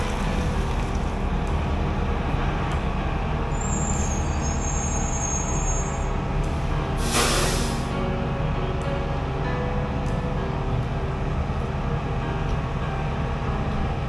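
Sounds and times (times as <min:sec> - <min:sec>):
diesel engine running: 0:00.0 - 0:14.0
high squeal: 0:03.5 - 0:06.2
air brake hiss: 0:07.0 - 0:08.0.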